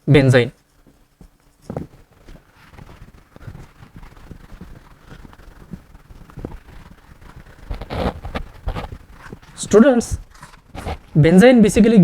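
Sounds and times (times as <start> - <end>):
low room hiss: 0.0 - 12.0
pen writing: 1.8 - 9.6, 10.3 - 11.2.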